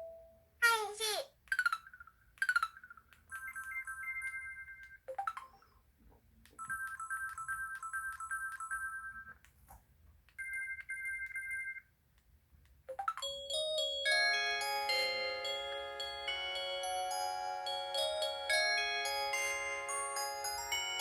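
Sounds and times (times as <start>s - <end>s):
phone chiming melody: 3.3s - 5.6s, 12.9s - 21.0s.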